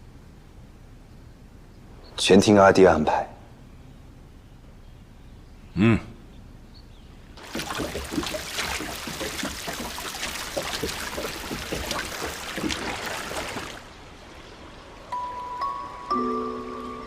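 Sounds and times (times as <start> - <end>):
water splashing and trickling: 7.4 - 17.0.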